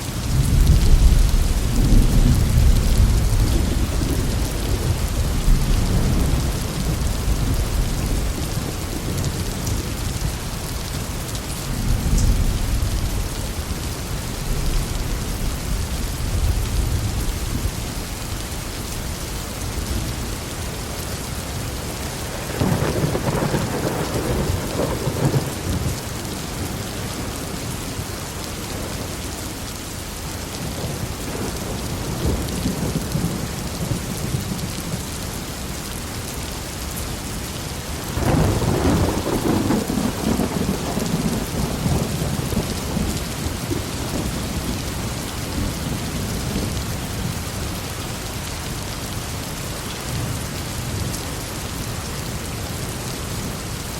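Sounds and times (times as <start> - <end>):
heavy rain falling: 0.0 - 53.9
thunder rumbling: 0.2 - 18.2, 21.8 - 27.7, 37.9 - 47.5.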